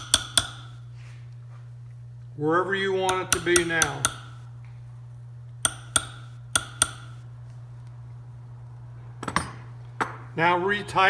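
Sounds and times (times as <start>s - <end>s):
hammer tapping a punch: 0.0s - 0.8s, 3.1s - 4.5s, 5.6s - 7.2s
steady low hum: 0.0s - 11.0s.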